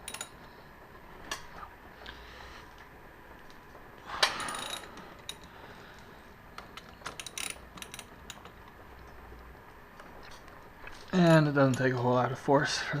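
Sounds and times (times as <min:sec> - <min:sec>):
socket ratchet clicking: 0:06.8 - 0:08.5.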